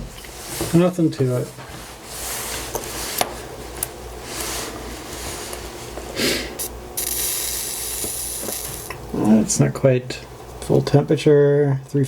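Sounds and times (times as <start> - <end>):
soft hiss: 6.5 - 9.3.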